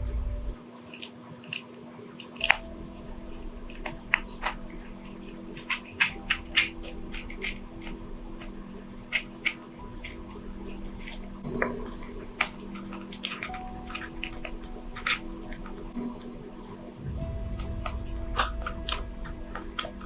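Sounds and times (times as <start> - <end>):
steady low hum: 0.0 - 0.6, 2.4 - 20.0
repair tools clicking and tapping: 0.8 - 16.8.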